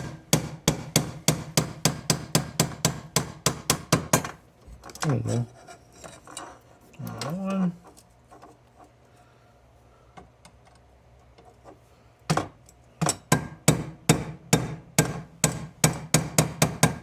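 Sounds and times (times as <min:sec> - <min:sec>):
hammer striking steel punch: 0:00.0 - 0:04.2, 0:12.3 - 0:17.0.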